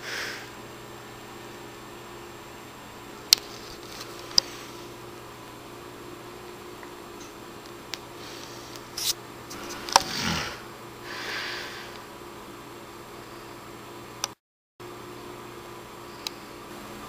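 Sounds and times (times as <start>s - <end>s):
steady hum: 0.0s - 17.0s
woman snoring: 10.0s - 12.0s.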